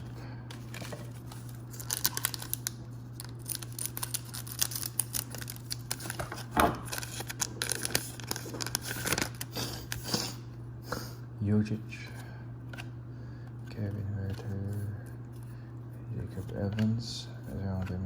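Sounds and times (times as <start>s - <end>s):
foil pack tearing and crinkling: 0.6s - 10.3s.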